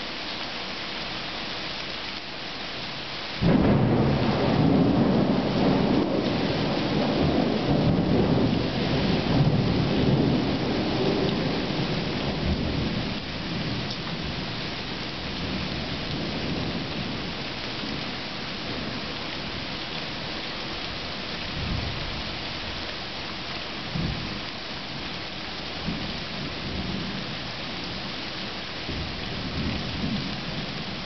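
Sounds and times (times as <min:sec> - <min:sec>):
heavy rain: 0:00.0 - 0:31.0
thunder rumbling: 0:03.4 - 0:19.6.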